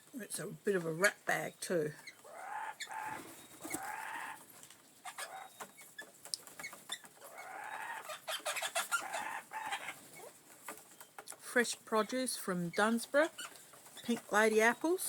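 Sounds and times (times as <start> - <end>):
harsh bird calls: 2.0 - 11.3
small clicks and taps: 5.6 - 7.1.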